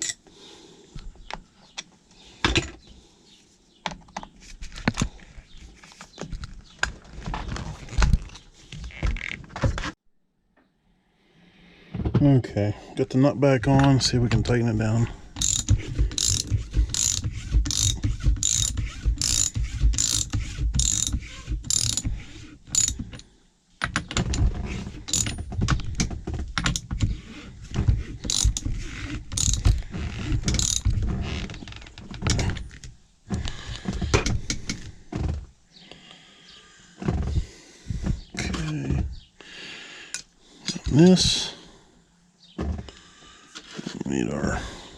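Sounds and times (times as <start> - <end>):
ratchet wrench clicking: 15.4 - 21.1, 21.7 - 22.1, 22.7 - 23.0, 28.3 - 28.6, 29.4 - 29.6, 30.5 - 30.8
clatter of handling tools: 15.4 - 35.4.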